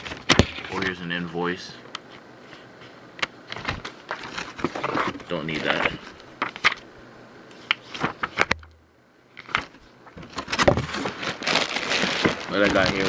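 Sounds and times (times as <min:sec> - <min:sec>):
packaging rustling and crinkling: 0:03.5 - 0:06.8, 0:07.6 - 0:08.6, 0:09.4 - 0:13.0.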